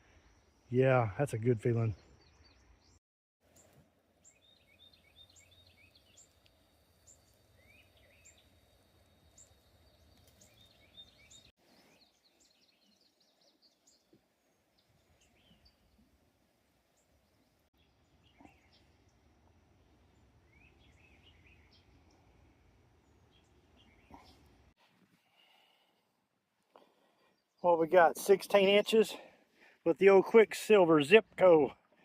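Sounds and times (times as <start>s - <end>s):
birds chirping and calling: 9.3s - 14.1s.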